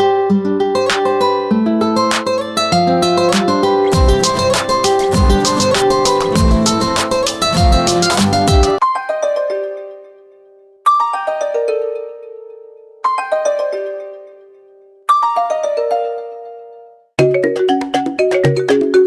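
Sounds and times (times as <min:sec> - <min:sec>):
mallet-like ringtone melody: 0:03.3 - 0:10.1, 0:10.9 - 0:14.5, 0:15.1 - 0:19.0.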